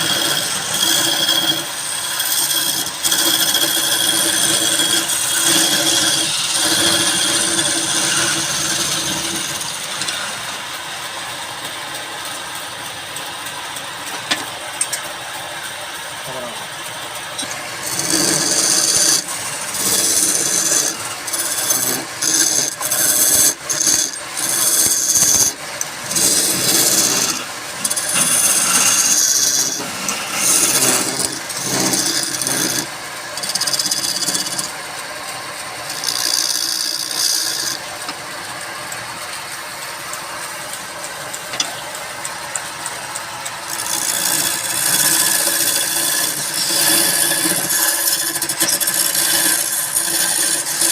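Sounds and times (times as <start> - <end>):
tool scraping into wood: 0.0 - 10.6, 17.4 - 34.8, 35.9 - 37.8, 43.7 - 50.9
woodworking machine running: 0.0 - 50.9.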